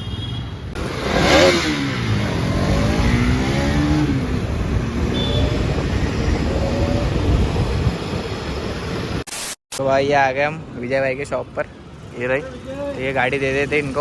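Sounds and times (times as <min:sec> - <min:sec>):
loud wind noise: 0:00.6 - 0:09.3
motorcycle engine accelerating: 0:00.8 - 0:09.2.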